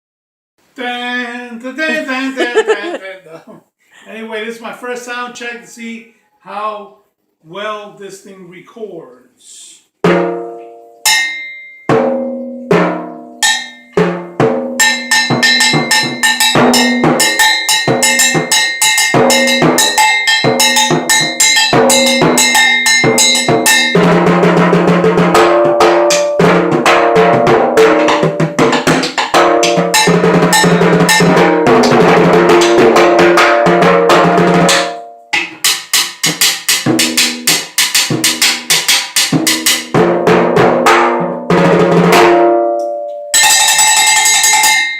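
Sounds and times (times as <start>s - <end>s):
drum kit playing: 1.9s - 3.0s, 10.0s - 43.6s.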